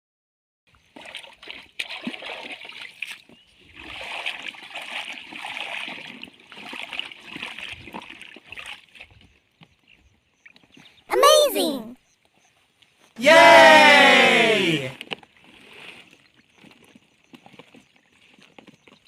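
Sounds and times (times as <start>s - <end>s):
water splashing and sloshing: 0.8s - 9.3s, 15.1s - 18.8s.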